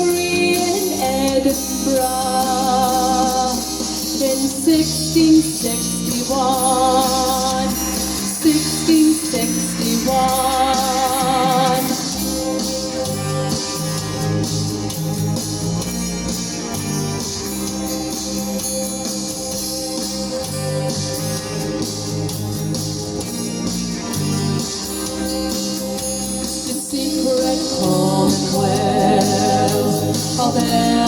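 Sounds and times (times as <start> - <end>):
person singing with vibrato: 0.0 - 13.8, 25.8 - 31.0
band playing with steady beat: 0.0 - 31.0.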